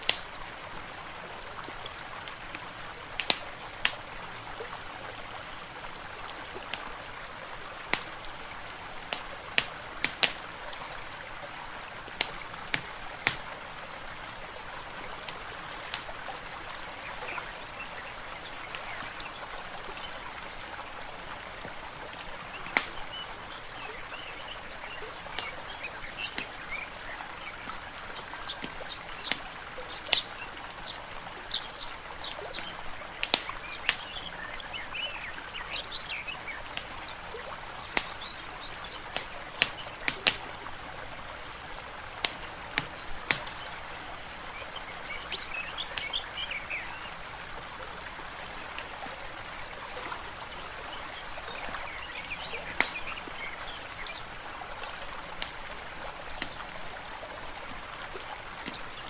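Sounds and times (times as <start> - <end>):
water washing: 7.8 - 23.2, 42.2 - 56.9
birds chirping: 12.8 - 21.2, 22.3 - 40.5, 42.3 - 56.8.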